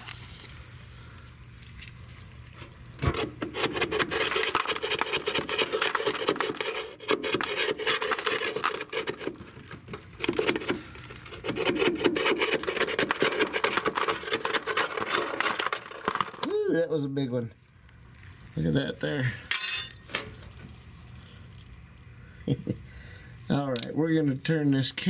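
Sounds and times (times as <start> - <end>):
metal scraping: 3.0 - 16.4.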